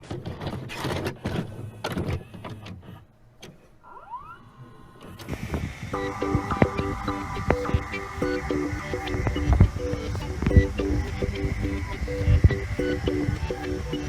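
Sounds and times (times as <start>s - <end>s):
electronic music: 5.9s - 14.0s.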